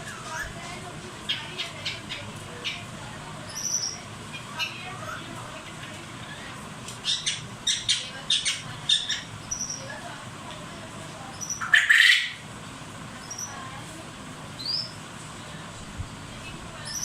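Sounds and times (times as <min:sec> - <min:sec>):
high thin bird chirps: 0:03.5 - 0:04.0, 0:07.0 - 0:09.9, 0:11.3 - 0:12.4, 0:13.2 - 0:13.6, 0:14.6 - 0:15.0
parrot squawk: 0:11.4 - 0:12.4.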